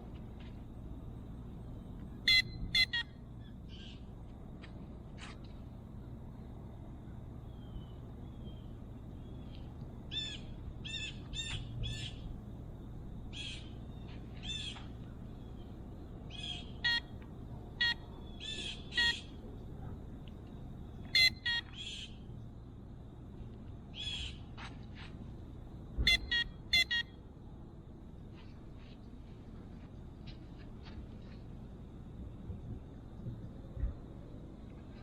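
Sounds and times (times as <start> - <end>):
low background rumble: 0.0 - 35.0
sharp bird calls: 2.3 - 4.1, 7.6 - 12.3, 13.3 - 15.7, 17.8 - 19.4, 26.1 - 27.1.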